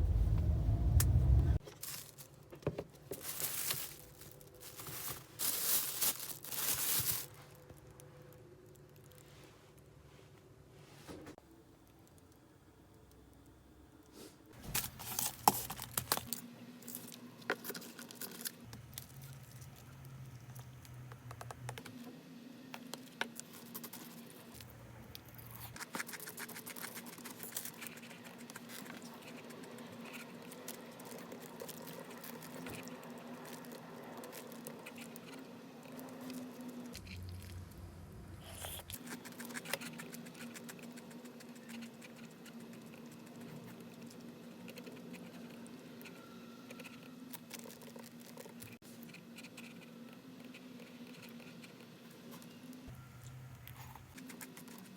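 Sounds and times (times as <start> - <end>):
steady low hum: 0.0 - 1.6
food packaging rustling and tapping: 1.6 - 7.3, 14.6 - 16.4.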